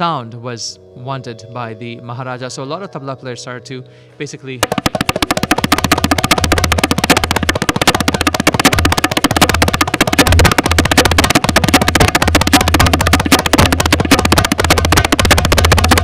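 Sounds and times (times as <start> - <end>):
deep bass drum ringing: 4.6 - 16.0
rapid tabla strokes: 4.6 - 16.0.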